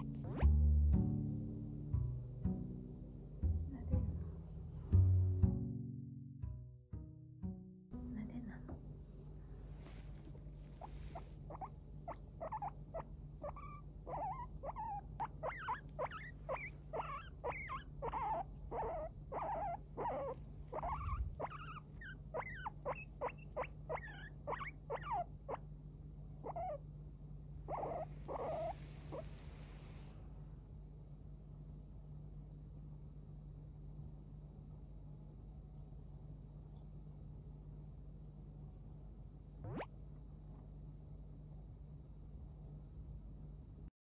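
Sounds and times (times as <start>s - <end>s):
guinea pig wheeking: 0.0s - 0.4s, 10.6s - 25.7s, 26.4s - 26.9s, 27.6s - 30.1s, 39.6s - 40.0s.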